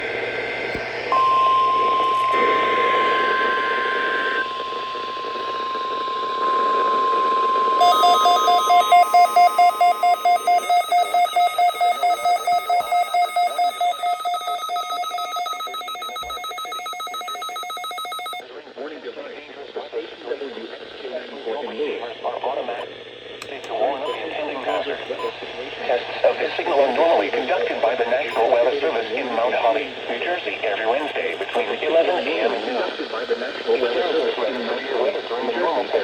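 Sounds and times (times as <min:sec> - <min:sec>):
higher tone: 0:01.1 - 0:18.4
steady warning alarm tone: 0:01.1 - 0:18.4
fast alert beeping: 0:07.8 - 0:18.4.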